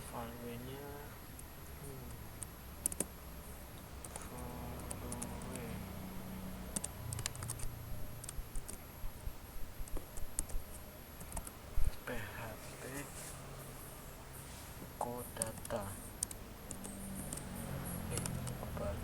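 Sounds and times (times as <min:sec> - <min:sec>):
computer keyboard typing: 0:02.1 - 0:03.2, 0:04.0 - 0:05.7, 0:06.7 - 0:08.8, 0:09.8 - 0:11.6, 0:15.2 - 0:19.0.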